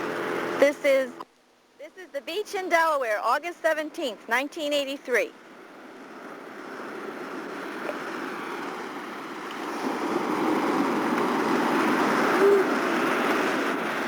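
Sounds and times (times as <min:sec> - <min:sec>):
ocean surf breaking: 0:05.5 - 0:14.0.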